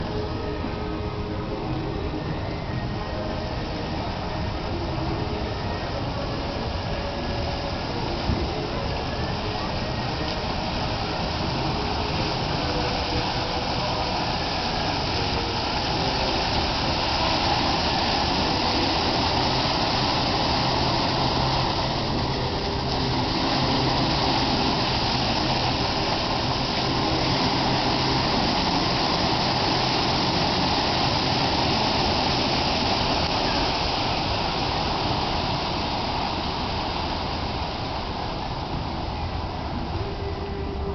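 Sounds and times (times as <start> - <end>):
fountain water gushing: 0.0 - 40.9.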